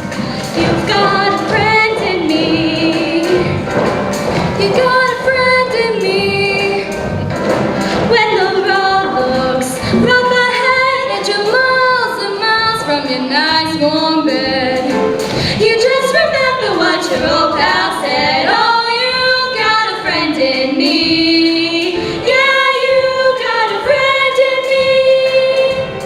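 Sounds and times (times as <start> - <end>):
choir singing: 0.0 - 13.4
instrumental accompaniment: 0.0 - 26.0.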